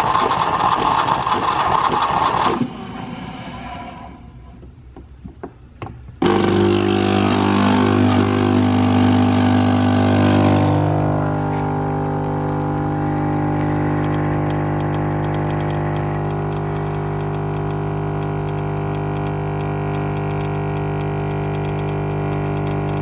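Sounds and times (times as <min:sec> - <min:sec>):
hiss: 0:00.0 - 0:04.6
coffee machine pump humming: 0:06.2 - 0:23.0.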